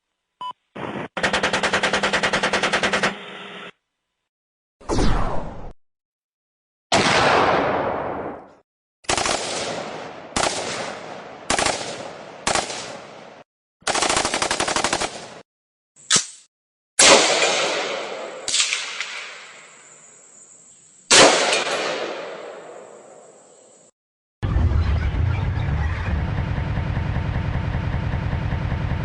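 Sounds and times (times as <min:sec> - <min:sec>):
machine-gun fire: 0:01.0 - 0:03.2, 0:09.1 - 0:15.4, 0:21.1 - 0:22.6
heavy gunshots: 0:06.9 - 0:08.4, 0:09.1 - 0:15.4, 0:17.0 - 0:19.3, 0:21.1 - 0:22.7
sharp crack: 0:16.1 - 0:19.6, 0:21.1 - 0:22.8
large explosions: 0:24.4 - 0:29.0.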